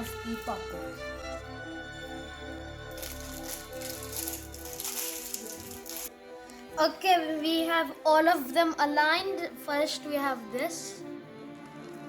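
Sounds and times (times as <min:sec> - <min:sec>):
background music with held notes: 0:00.0 - 0:12.0
crinkly rustling: 0:02.9 - 0:06.1.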